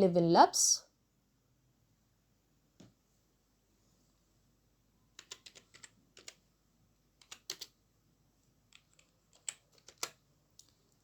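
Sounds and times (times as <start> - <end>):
computer keyboard typing: 5.1 - 6.4, 7.2 - 7.8, 8.7 - 10.8.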